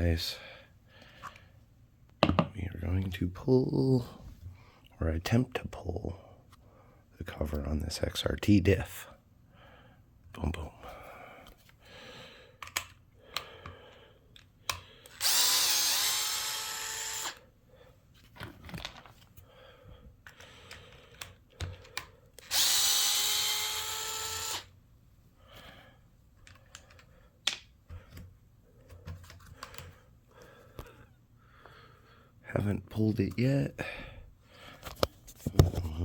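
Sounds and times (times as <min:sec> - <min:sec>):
small handling clicks and knocks: 0:12.6 - 0:14.9, 0:20.2 - 0:22.4, 0:26.3 - 0:30.0
power driver whirring: 0:15.0 - 0:17.4, 0:22.4 - 0:24.7.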